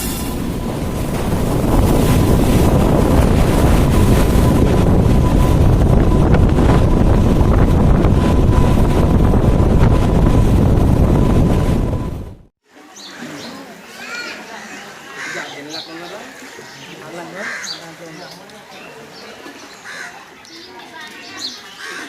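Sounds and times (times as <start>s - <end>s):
deep rumble: 0.0s - 12.5s
wind buffeting microphone: 0.0s - 12.5s.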